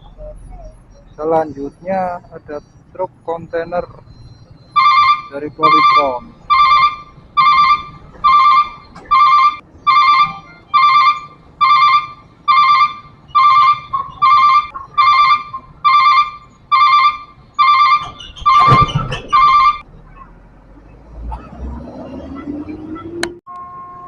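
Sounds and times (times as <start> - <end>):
low rumble and rushing noise: 11.2 - 23.4.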